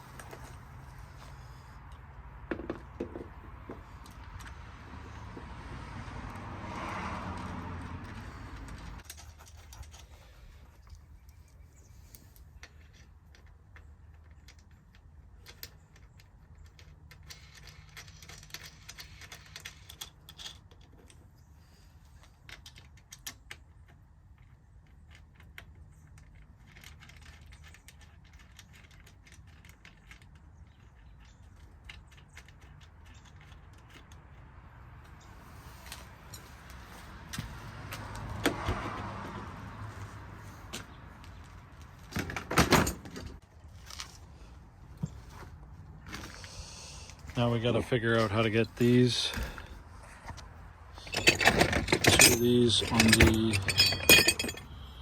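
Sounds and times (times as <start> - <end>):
hand tools clinking on metal: 51.0 - 55.0.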